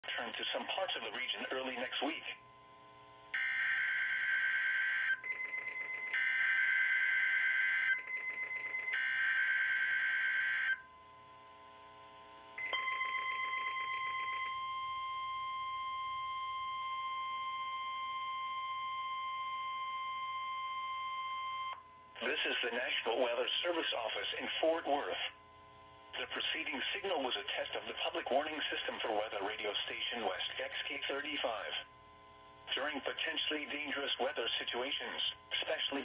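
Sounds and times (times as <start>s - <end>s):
steady alarm tone: 3.3s - 10.8s, 12.6s - 21.8s.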